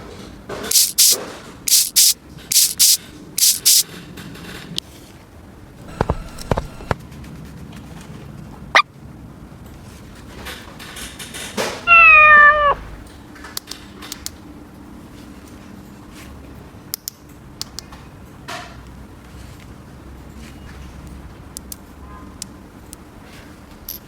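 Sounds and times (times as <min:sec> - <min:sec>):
cat meowing: 0:11.9 - 0:13.1.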